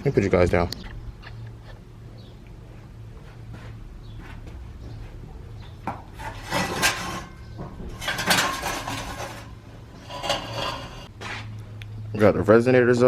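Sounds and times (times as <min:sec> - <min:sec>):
steady low hum: 0:00.0 - 0:12.9
metal parts clanking: 0:06.2 - 0:11.1.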